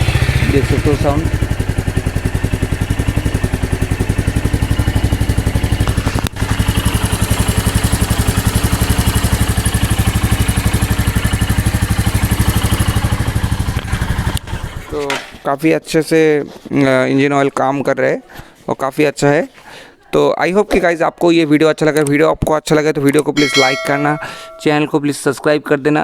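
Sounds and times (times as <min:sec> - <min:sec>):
motorcycle engine idling: 0:00.0 - 0:14.9.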